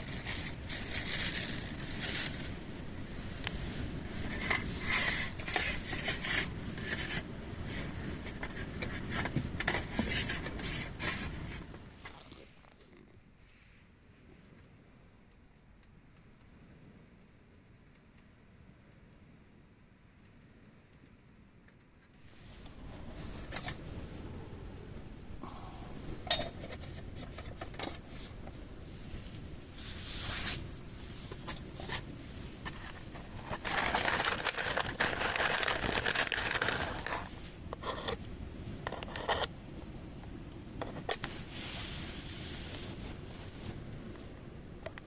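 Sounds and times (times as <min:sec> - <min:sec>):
rustling: 0:00.0 - 0:15.7, 0:26.4 - 0:40.0, 0:40.9 - 0:44.4
steady low rumble: 0:00.0 - 0:21.6, 0:22.2 - 0:45.0.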